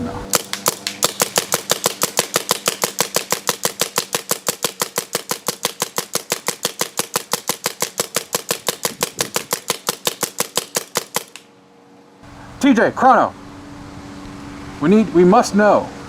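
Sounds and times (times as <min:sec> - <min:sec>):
paintball marker rapid shots: 0:00.3 - 0:11.5.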